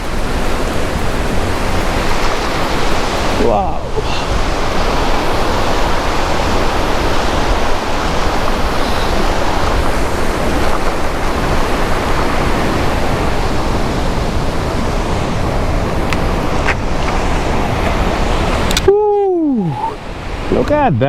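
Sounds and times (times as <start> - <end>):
fluttering rumble: 0.0 - 6.5
loud rushing noise: 0.0 - 13.3.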